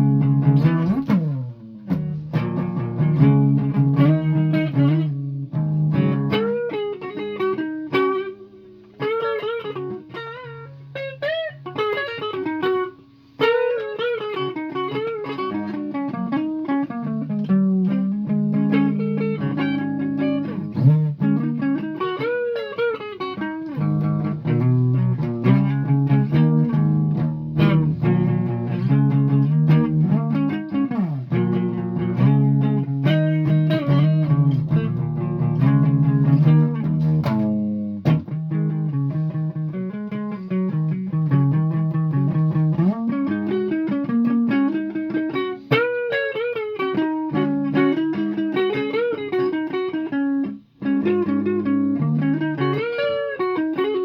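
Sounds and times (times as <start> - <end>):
guitar with bent notes: 0.0 - 54.0.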